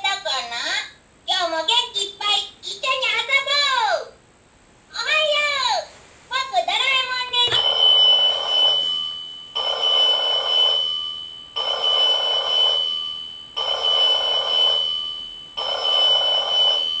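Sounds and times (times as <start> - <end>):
alarm clock electronic bell: 7.5 - 17.0.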